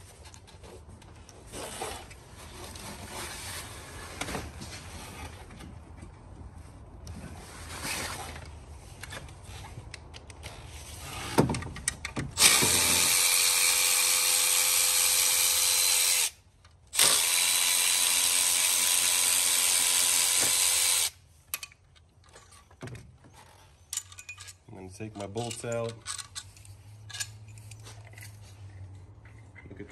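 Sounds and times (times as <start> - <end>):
cordless power tool spinning bolts: 12.3 - 21.2.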